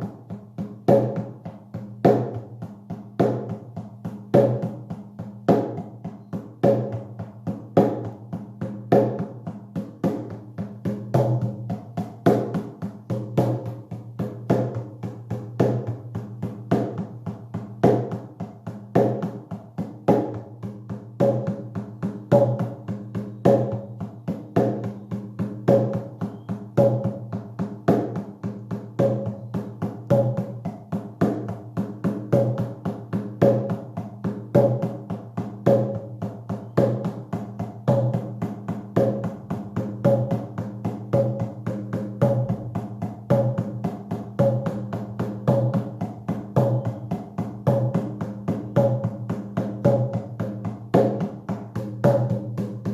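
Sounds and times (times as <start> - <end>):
hand drum beaten steadily: 0.0 - 52.9.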